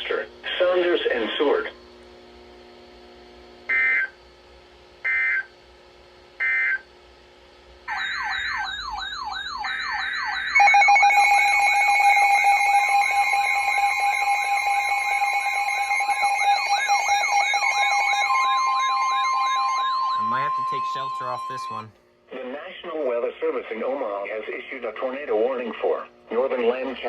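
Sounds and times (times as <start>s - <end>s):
steady alarm tone: 3.7s - 4.2s, 5.0s - 5.5s, 6.4s - 6.8s, 7.8s - 21.9s
warbling alarm tones: 3.7s - 4.2s, 5.1s - 5.5s, 7.9s - 21.9s
digital data tones: 7.9s - 21.9s.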